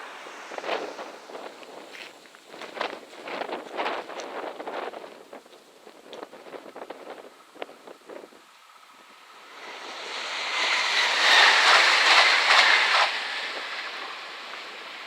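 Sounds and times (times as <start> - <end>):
train rushing past: 0.0 - 2.1, 8.9 - 15.0
train wheels clicking: 9.3 - 15.0.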